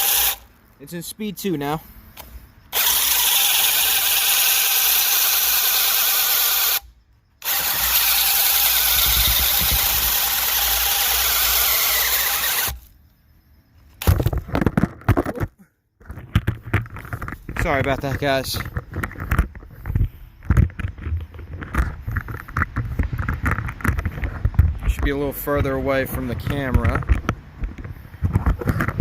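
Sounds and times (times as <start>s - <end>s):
hammer drill running: 0.0s - 0.4s, 2.7s - 6.8s, 7.4s - 12.9s.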